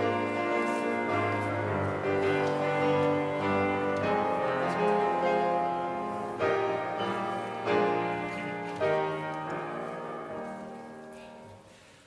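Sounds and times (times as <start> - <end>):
keyboard playing slow hymn chords: 0.0 - 11.7.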